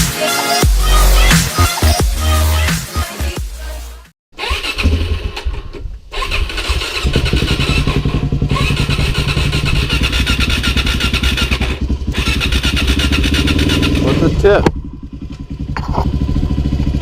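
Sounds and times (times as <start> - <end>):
motorcycle engine churning: 4.4 - 17.0.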